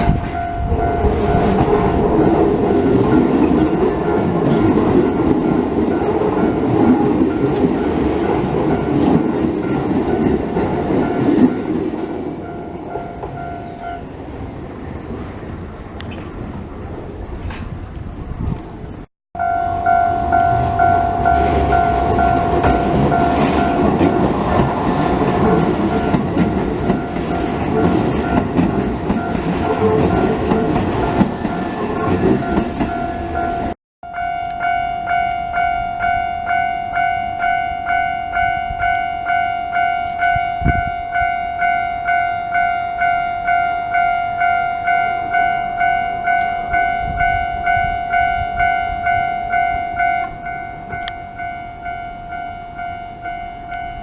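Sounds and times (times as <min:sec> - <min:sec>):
train rumbling: 0:00.0 - 0:54.0
level crossing alarm ringing: 0:19.4 - 0:54.0.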